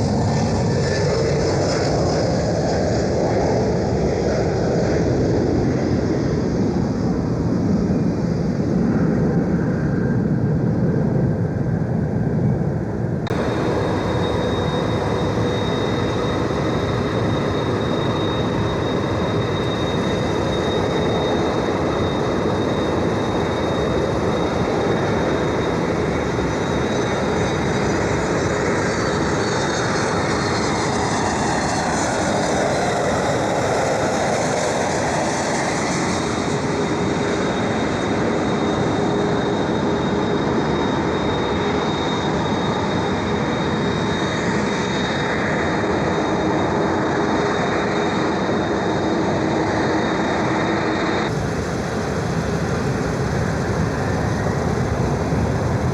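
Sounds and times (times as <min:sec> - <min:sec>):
jet engines rumbling: 0:00.0 - 0:55.9
high engine whine: 0:12.8 - 0:38.2, 0:47.3 - 0:55.9.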